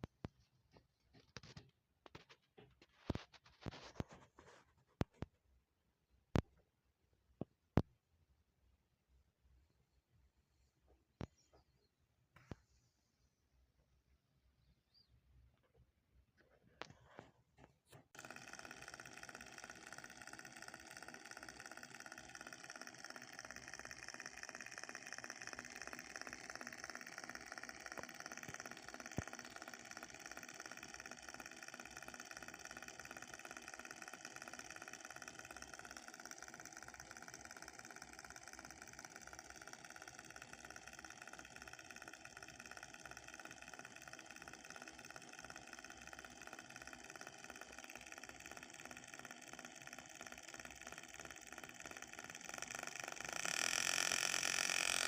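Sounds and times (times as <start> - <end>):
model diesel engine running: 18.2 - 55.0.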